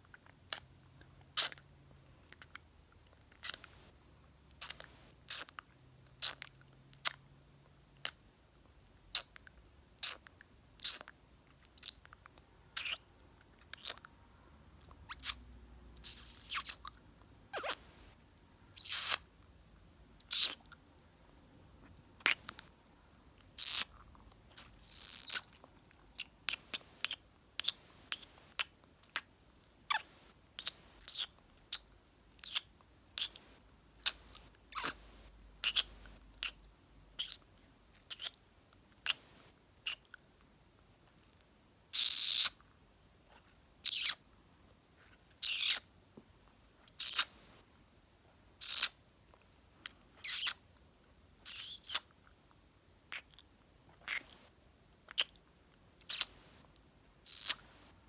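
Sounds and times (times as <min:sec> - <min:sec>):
kisses and lip smacks: 0:13.8 - 0:14.0, 0:16.0 - 0:16.9, 0:17.6 - 0:17.9, 0:26.2 - 0:29.3, 0:32.4 - 0:33.4, 0:34.1 - 0:35.0, 0:35.6 - 0:36.6, 0:38.1 - 0:38.4, 0:47.0 - 0:47.4, 0:51.5 - 0:52.1, 0:55.1 - 0:55.4, 0:56.1 - 0:56.4, 0:57.3 - 0:57.7.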